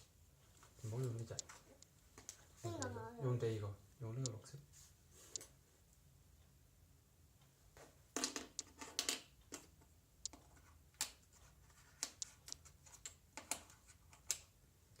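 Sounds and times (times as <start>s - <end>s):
wooden blocks clicking and knocking: 8.2s - 9.7s.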